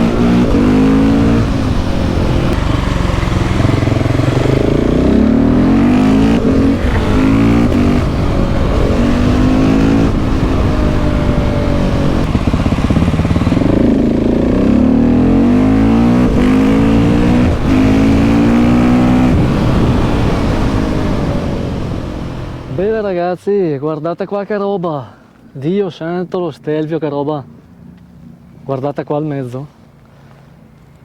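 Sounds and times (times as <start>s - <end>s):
motorcycle engine accelerating: 0.0s - 23.1s.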